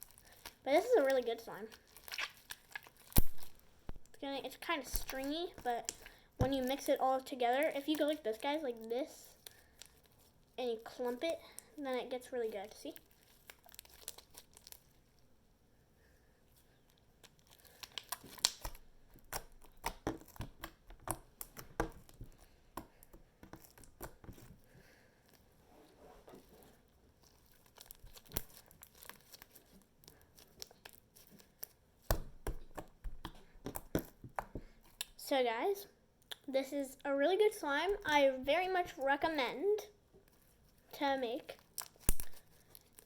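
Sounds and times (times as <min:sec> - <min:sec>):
slime popping and crackling: 0:00.0 - 0:10.1, 0:12.9 - 0:14.9, 0:17.2 - 0:24.5, 0:27.2 - 0:35.2, 0:41.5 - 0:43.0.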